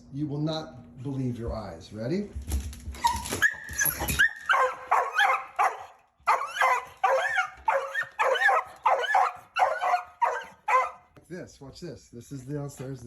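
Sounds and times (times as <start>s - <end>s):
dog yipping and whining: 3.0s - 11.1s.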